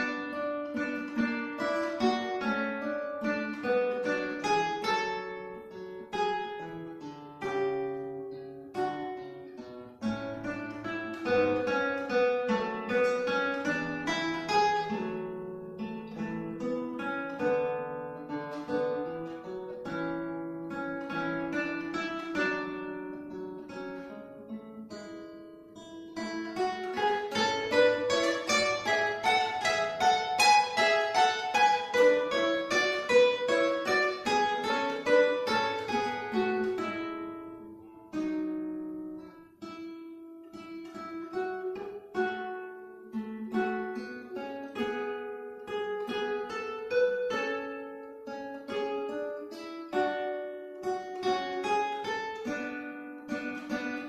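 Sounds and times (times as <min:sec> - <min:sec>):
acoustic guitars playing: 0:00.0 - 0:54.0.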